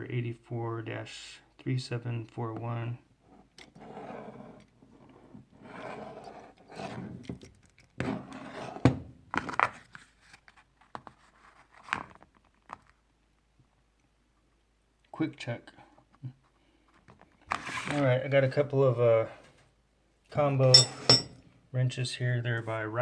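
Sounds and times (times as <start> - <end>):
tools scraping and rustling: 8.0 - 9.6, 17.5 - 18.0, 20.6 - 21.4
tools knocking and clicking: 20.8 - 21.4.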